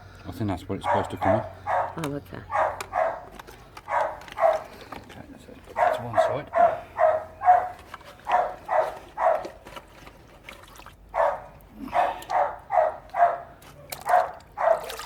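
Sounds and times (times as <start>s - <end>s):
dog barking: 0.8s - 3.3s, 3.9s - 4.7s, 5.7s - 9.6s, 11.1s - 15.0s.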